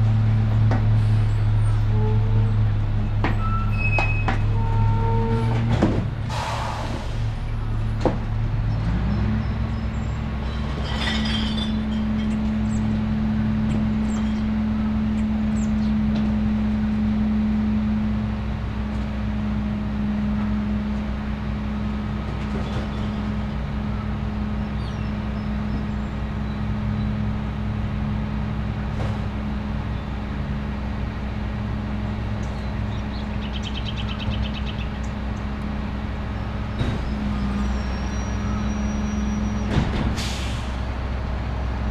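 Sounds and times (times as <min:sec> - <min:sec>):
garbage truck engine droning: 0:00.0 - 0:41.9
clatter: 0:10.4 - 0:12.8.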